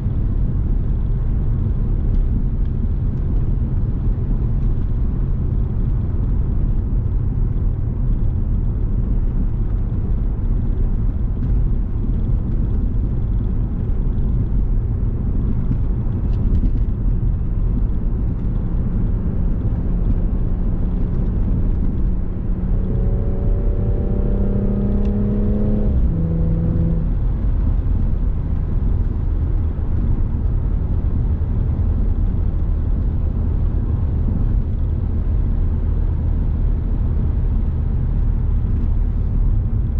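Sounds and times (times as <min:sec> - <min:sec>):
car engine and road noise: 0:00.0 - 0:39.9
humming engine note: 0:15.8 - 0:33.0.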